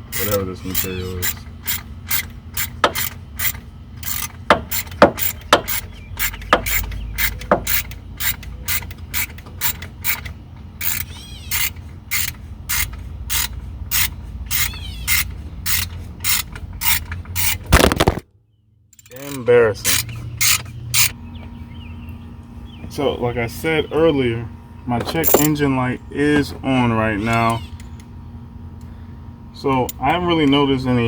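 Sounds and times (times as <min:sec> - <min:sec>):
ratchet wrench clicking: 0:00.1 - 0:17.7, 0:19.0 - 0:21.2.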